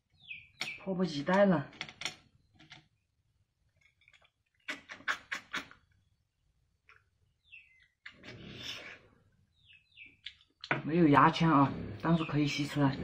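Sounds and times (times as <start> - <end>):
wet sucking and slurping: 4.6 - 5.8, 8.1 - 9.2.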